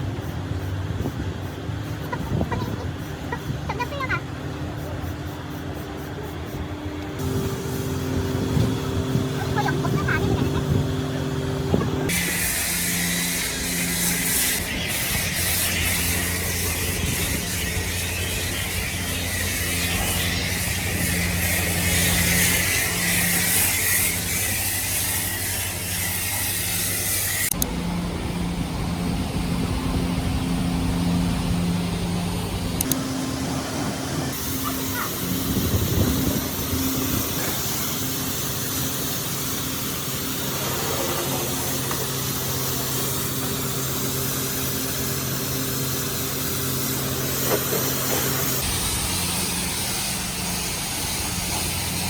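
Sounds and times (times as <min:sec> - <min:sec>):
pressure washer spraying water: 0:00.0 - 0:52.0
steady machine hum: 0:00.0 - 0:52.0.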